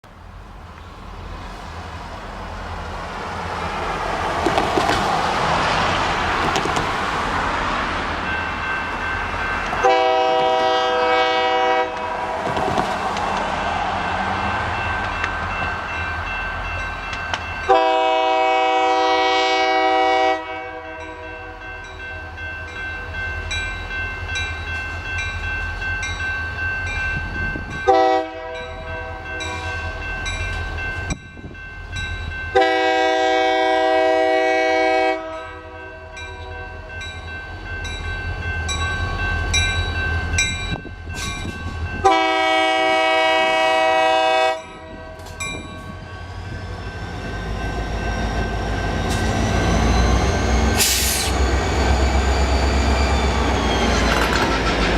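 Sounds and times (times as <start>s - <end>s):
crossing bell ringing: 7.9s - 12.2s, 13.7s - 54.9s
locomotive air horn blasts: 9.8s - 12.4s, 17.7s - 21.5s, 27.8s - 30.0s, 32.5s - 35.8s, 42.0s - 44.8s.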